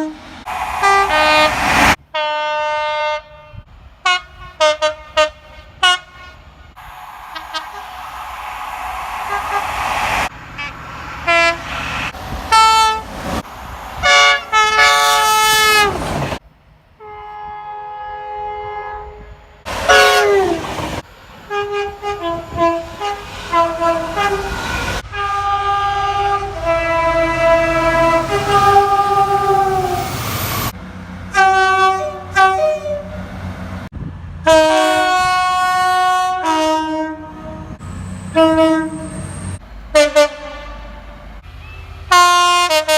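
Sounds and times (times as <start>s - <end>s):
train rumble: 0.0s - 16.5s, 19.6s - 42.9s
two-tone train horn blasts: 0.8s - 6.5s, 14.0s - 16.0s, 17.0s - 20.6s, 21.5s - 30.1s, 31.3s - 33.2s, 34.4s - 41.2s, 42.1s - 42.9s.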